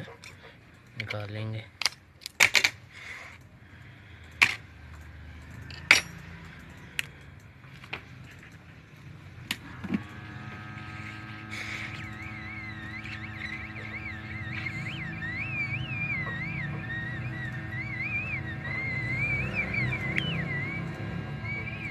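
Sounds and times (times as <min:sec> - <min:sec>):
drone with wavering high melody: 0:09.6 - 0:21.9.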